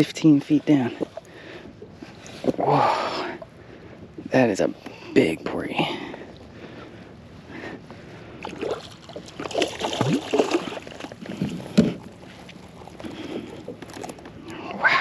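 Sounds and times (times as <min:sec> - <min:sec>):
water splashing: 0:08.4 - 0:14.4.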